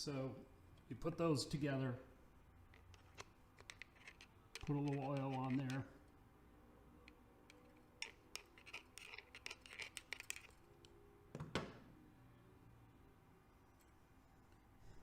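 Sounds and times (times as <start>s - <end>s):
small metal parts clicking: 2.7s - 5.9s, 7.0s - 10.9s.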